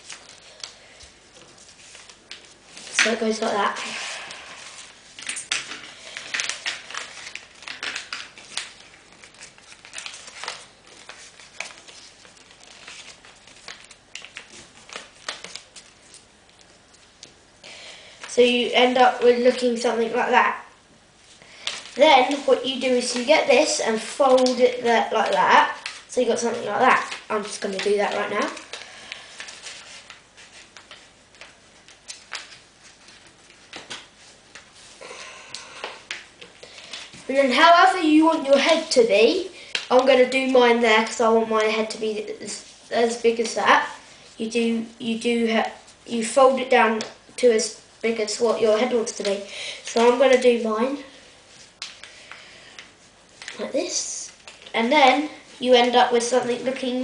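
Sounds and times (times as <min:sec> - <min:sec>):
paper rustling and crinkling: 0:00.0 - 0:17.4, 0:21.2 - 0:35.1, 0:48.7 - 0:57.0.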